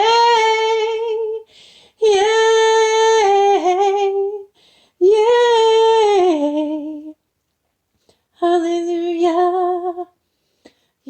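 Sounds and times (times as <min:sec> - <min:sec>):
woman singing unaccompanied: 0:00.0 - 0:07.2, 0:08.3 - 0:10.2
quick breath: 0:01.5 - 0:02.0, 0:04.6 - 0:05.0.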